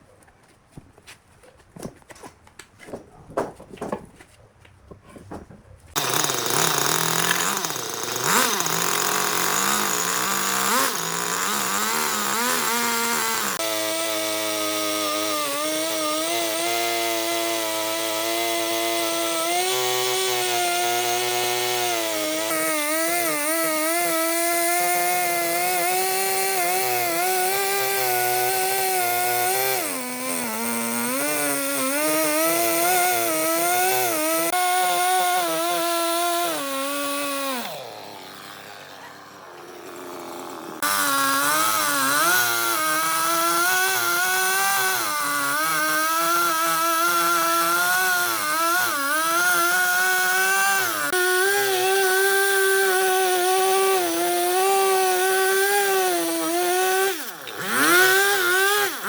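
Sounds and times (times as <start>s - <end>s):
chainsaw cutting wood: 5.9s - 59.0s.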